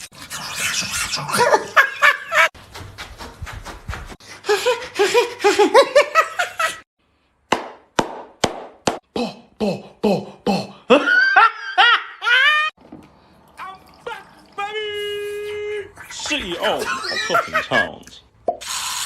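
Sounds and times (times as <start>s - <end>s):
person laughing: 4.4s - 6.8s, 10.7s - 12.7s, 16.5s - 18.2s.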